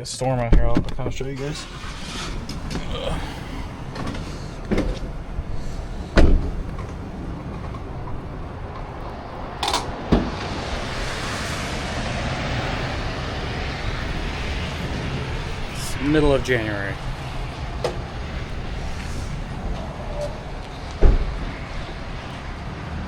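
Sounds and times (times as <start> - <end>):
wind: 0.0 - 23.0
car doors clunking: 0.5 - 8.9, 19.7 - 22.0
heavy rain: 1.5 - 6.2, 7.0 - 23.0.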